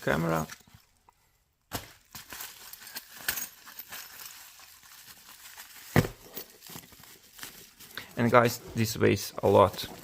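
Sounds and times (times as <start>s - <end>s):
packaging rustling: 1.6s - 10.0s
metal padlocks clinking: 2.6s - 4.4s.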